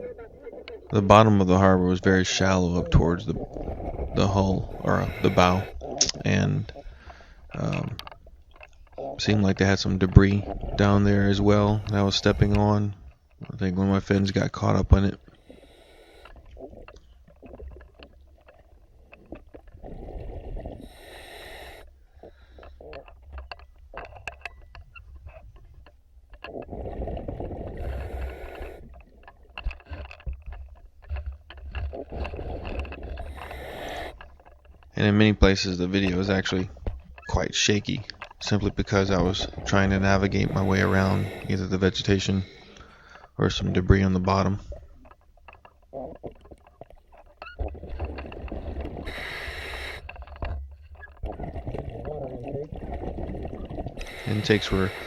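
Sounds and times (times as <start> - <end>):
underwater bubbles rushing: 0.0 - 13.6, 16.4 - 21.8, 26.5 - 34.9, 38.3 - 42.0, 46.1 - 55.0
low underwater rumble: 0.0 - 15.0
sharp underwater clicks: 3.4 - 9.1, 9.8 - 14.5, 15.2 - 41.7, 44.7 - 55.0
scuba regulator hiss: 4.7 - 5.8, 11.8 - 12.6, 15.4 - 16.4, 20.8 - 21.9, 27.8 - 28.9, 33.3 - 34.2, 40.4 - 41.6, 49.1 - 50.1, 54.0 - 55.0.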